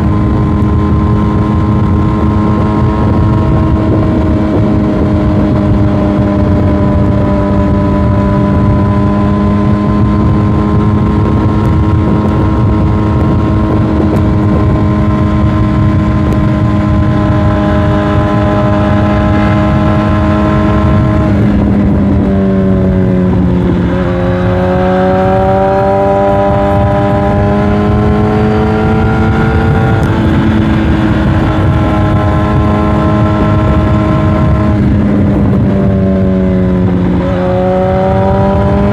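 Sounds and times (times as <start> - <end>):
motorcycle engine running: 0.0 - 38.9
wind rumble on microphone: 0.0 - 38.9.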